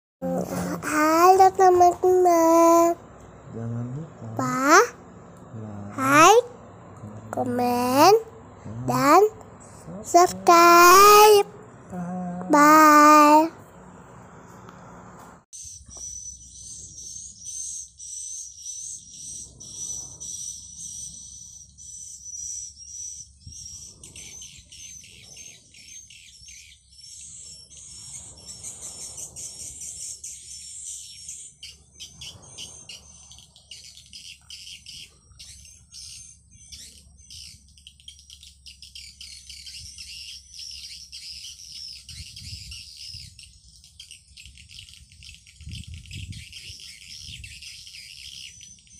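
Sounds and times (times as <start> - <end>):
swiftlets twittering: 0.3 - 13.5.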